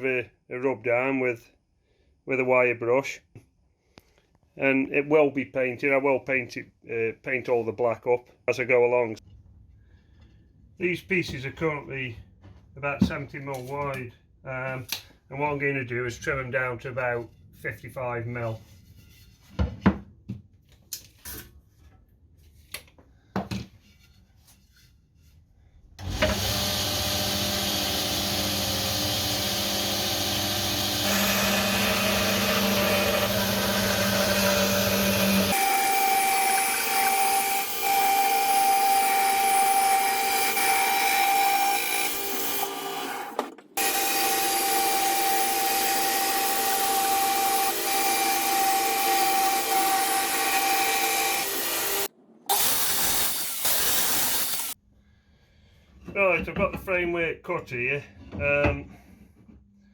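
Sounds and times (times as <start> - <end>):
woodworking machine cutting wood: 26.0 - 54.8.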